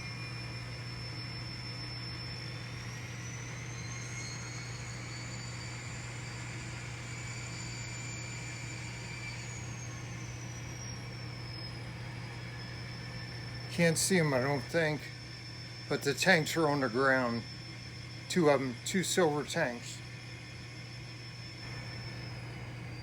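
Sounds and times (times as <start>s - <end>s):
model locomotive motor hum and whine: 0.0s - 23.0s.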